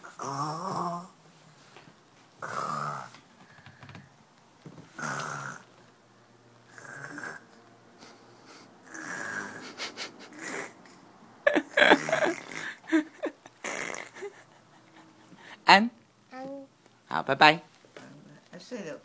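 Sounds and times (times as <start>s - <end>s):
child imitating snoring: 0.0s - 1.2s, 2.4s - 3.2s, 5.0s - 5.7s, 6.7s - 7.6s, 8.8s - 9.7s, 10.3s - 11.0s, 11.8s - 12.9s, 13.6s - 14.4s.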